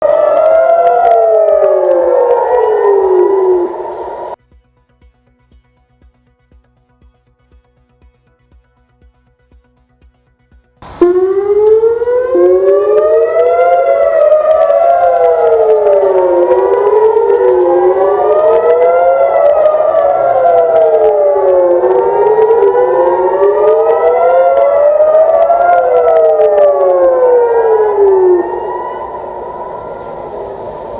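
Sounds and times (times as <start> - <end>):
warning sirens wailing: 0.0 - 4.4, 10.8 - 30.9.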